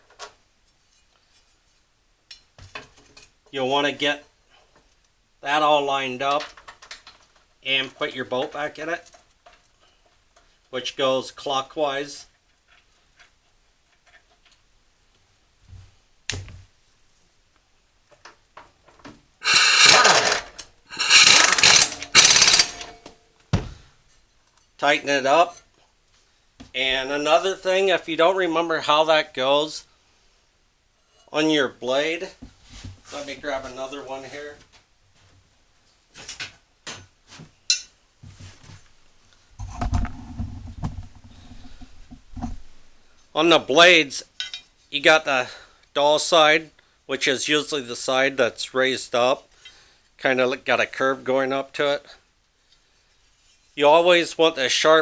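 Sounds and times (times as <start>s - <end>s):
power tool rapid rattling: 19.4s - 23.0s
metal blade clinking: 19.4s - 23.1s.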